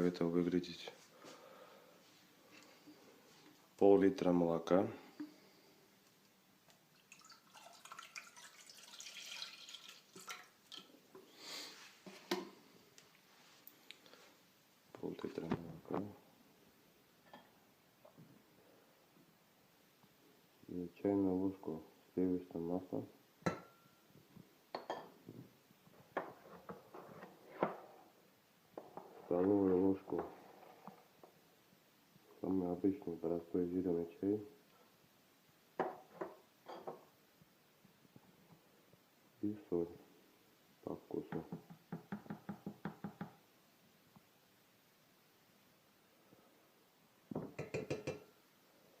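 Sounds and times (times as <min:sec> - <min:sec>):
milk pouring into container: 0:06.7 - 0:11.1.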